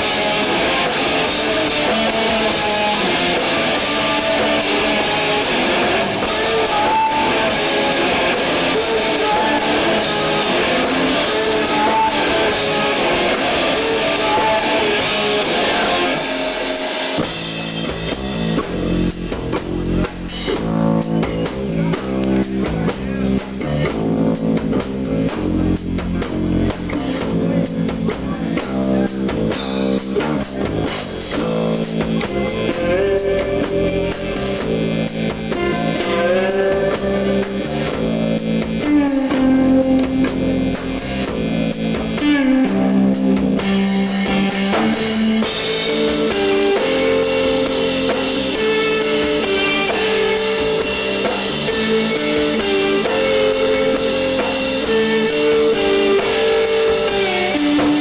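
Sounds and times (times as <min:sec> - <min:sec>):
bass and drums: 0:00.0 - 0:58.0
electric guitar: 0:00.0 - 0:58.0.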